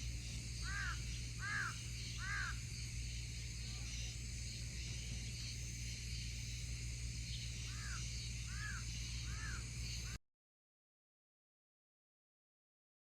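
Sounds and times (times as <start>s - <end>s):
bird calling: 0.0s - 10.2s
high-pitched outdoor background: 0.0s - 10.2s.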